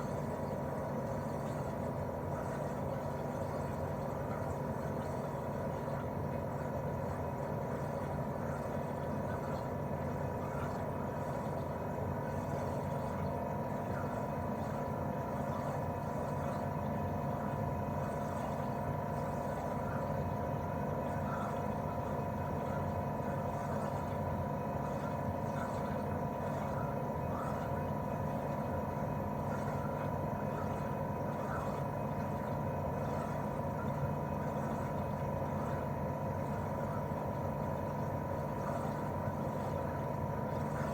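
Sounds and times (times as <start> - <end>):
air conditioner unit humming: 0.0 - 40.9.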